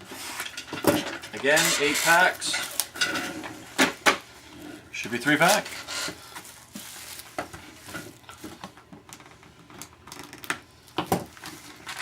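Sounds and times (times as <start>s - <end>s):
wrappers rustling: 5.0s - 8.6s, 11.3s - 12.0s.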